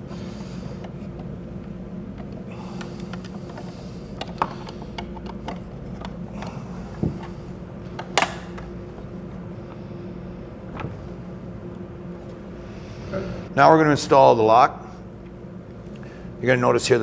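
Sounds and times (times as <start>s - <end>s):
steady low hum: 0.0s - 17.0s
screwdriver clicks and taps: 7.9s - 8.7s.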